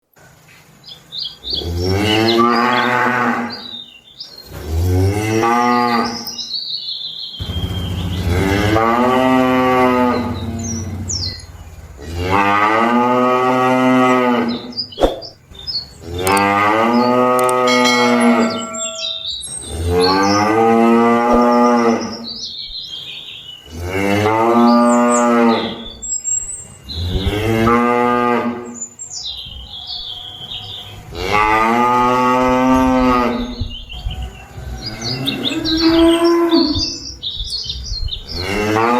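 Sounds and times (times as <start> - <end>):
cattle mooing: 8.1 - 14.8, 16.0 - 22.2, 30.8 - 33.7, 34.3 - 37.2, 38.3 - 38.9.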